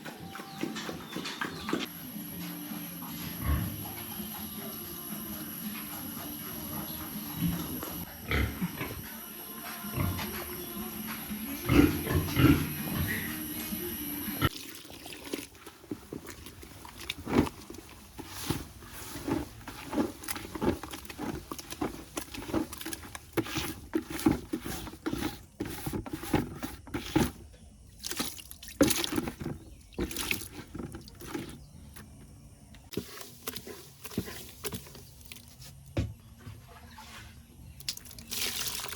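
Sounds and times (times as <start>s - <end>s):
wet splashing and dripping: 14.5s - 17.6s, 28.0s - 29.4s, 37.8s - 38.9s.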